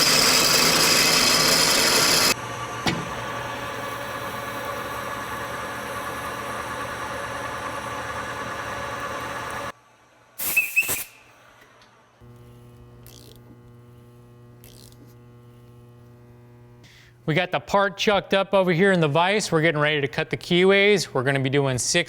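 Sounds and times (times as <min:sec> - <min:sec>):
machine tool running: 0:00.0 - 0:09.7
sharp squeal: 0:10.4 - 0:11.4
steady electrical hum: 0:12.0 - 0:22.0.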